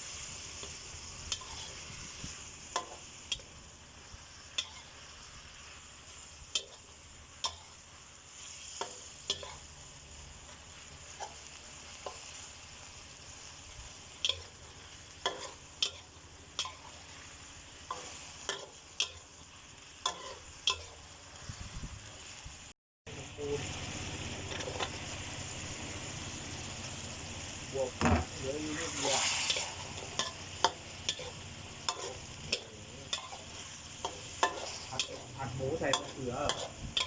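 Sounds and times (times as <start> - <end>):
food sizzling in a pan: 0.0 - 37.0
spatula scraping a pan: 1.3 - 1.9, 4.6 - 5.0, 8.4 - 9.7, 14.2 - 17.1, 20.0 - 21.0, 28.0 - 37.0.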